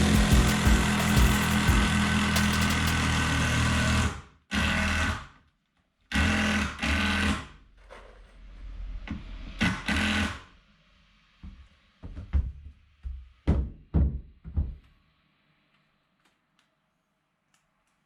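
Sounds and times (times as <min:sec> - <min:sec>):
power tool running in bursts: 0:00.0 - 0:04.2.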